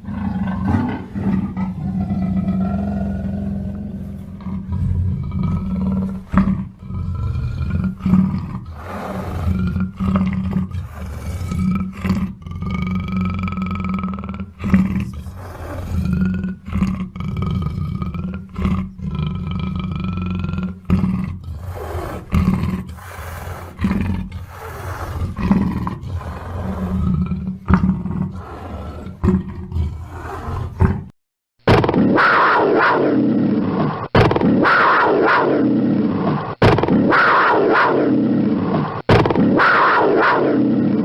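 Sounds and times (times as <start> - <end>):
big cat rough deep calls: 0.0 - 31.1.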